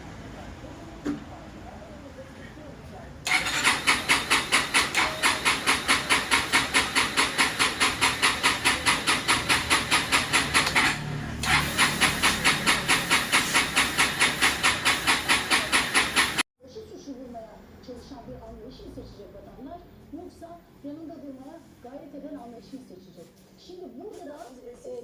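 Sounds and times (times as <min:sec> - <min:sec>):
engine cranking on electric starter: 0:03.2 - 0:16.4.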